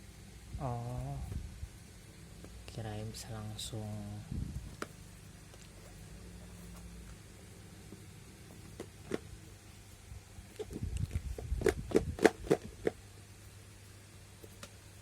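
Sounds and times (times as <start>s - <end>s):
box handling clicks and taps: 8.6s - 9.3s.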